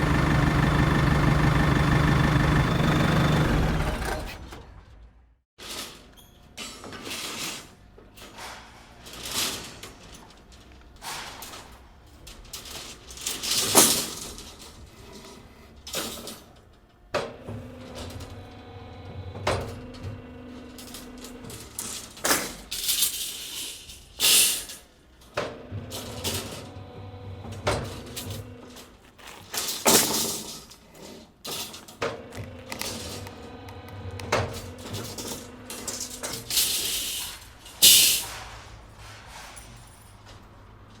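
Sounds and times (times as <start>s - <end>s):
steady machine hum: 0.0s - 4.2s, 32.2s - 36.5s.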